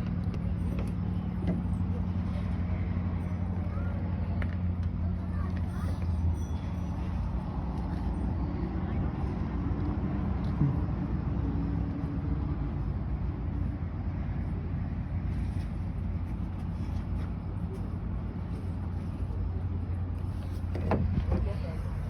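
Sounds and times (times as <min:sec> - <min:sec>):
car engine rumbling: 0:00.0 - 0:22.0.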